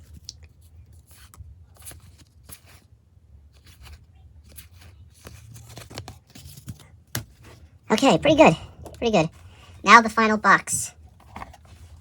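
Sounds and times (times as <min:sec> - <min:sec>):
low steady hum: 0:03.0 - 0:12.0
trading cards rustling and clicking: 0:03.5 - 0:09.1.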